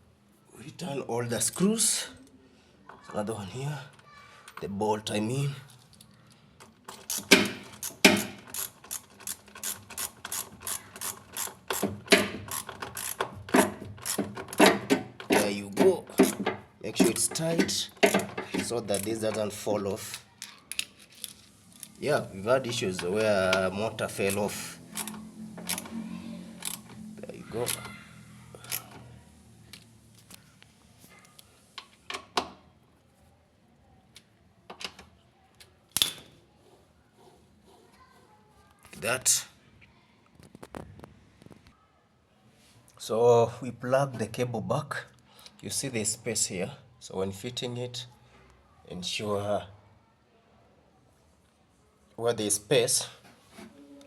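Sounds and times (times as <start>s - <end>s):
ratchet clicking: 6.9s - 15.5s, 22.7s - 29.0s.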